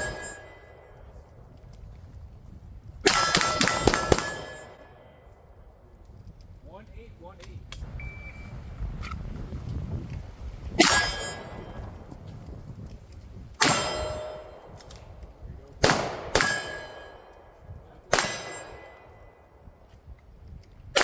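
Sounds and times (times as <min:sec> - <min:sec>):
metallic ring: 0:00.0 - 0:00.9, 0:03.1 - 0:05.0, 0:10.8 - 0:12.0, 0:13.6 - 0:14.8, 0:16.4 - 0:17.6, 0:18.2 - 0:19.4
pistol shots: 0:03.1 - 0:05.1, 0:15.8 - 0:19.6.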